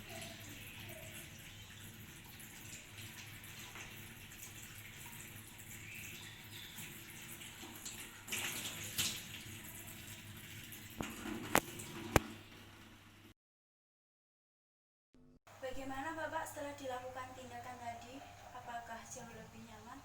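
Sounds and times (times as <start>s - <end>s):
tap water running into sink: 0.0s - 12.9s.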